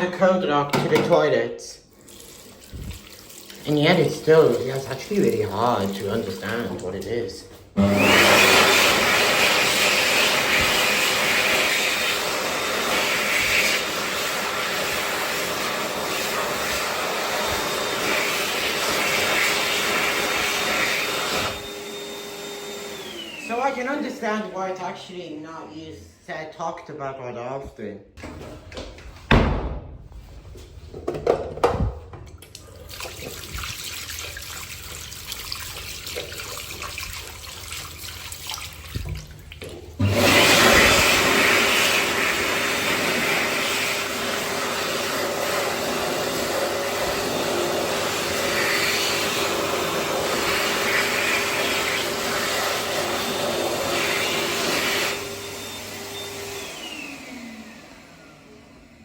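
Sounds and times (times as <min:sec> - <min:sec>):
hand dryer blowing: 0:02.0 - 0:24.8, 0:32.6 - 0:59.0.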